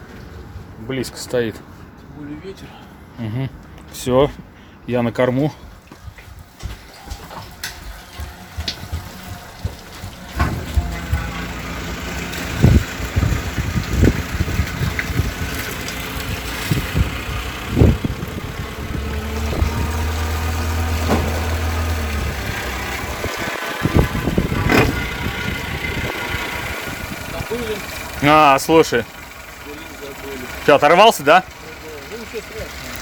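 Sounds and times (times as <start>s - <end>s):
knocks and thumps: 6.6s - 11.6s, 20.8s - 21.8s, 23.9s - 25.5s
boat engine idling: 7.9s - 33.0s.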